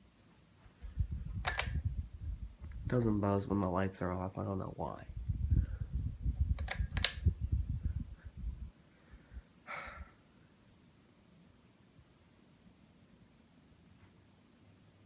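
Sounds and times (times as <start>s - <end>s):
low rumbling thumps: 0.8s - 3.3s, 5.1s - 8.7s
sharp clicks: 1.3s - 1.9s, 6.5s - 7.3s.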